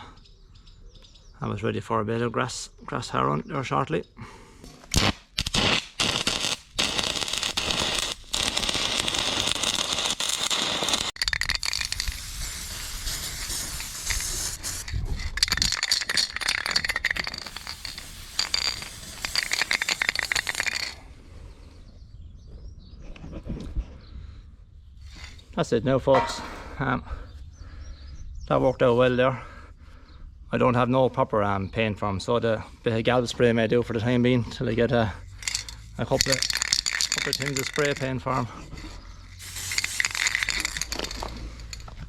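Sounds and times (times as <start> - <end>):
arc welding crackle: 4.9 - 14.9, 39.4 - 41.8.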